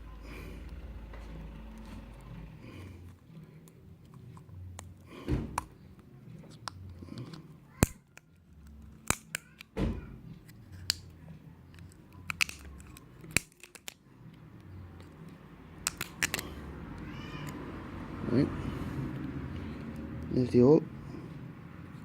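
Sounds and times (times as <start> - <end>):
blade piercing plastic bottle cap: 9.0 - 9.5, 12.3 - 14.0, 15.8 - 16.4.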